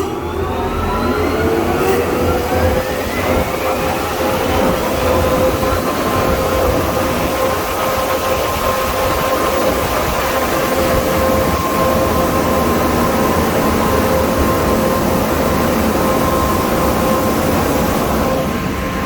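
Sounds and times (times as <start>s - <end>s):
air blowers rushing: 0.0s - 19.0s.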